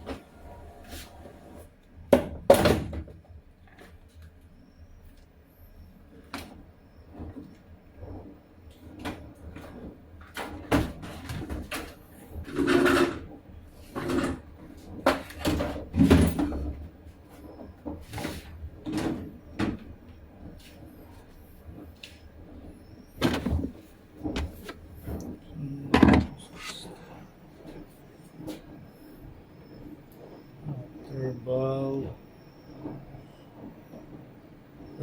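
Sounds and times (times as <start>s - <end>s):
knocks and clicks on plastic: 25.9s - 26.4s.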